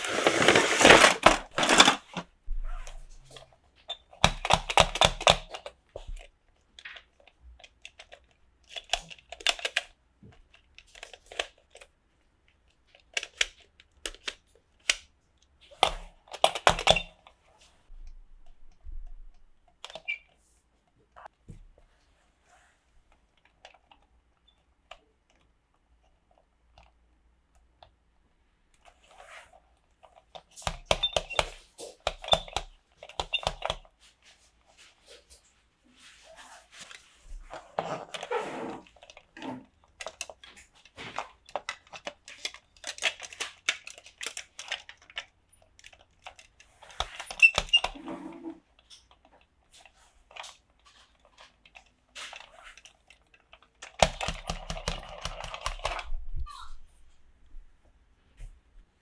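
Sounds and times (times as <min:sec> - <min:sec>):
plastic packaging crinkling: 0:00.0 - 0:02.2.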